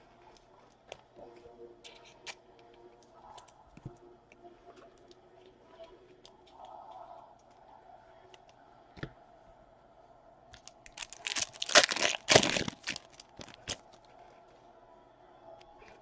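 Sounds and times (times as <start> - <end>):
wrapper tearing and crinkling: 10.6 - 14.0.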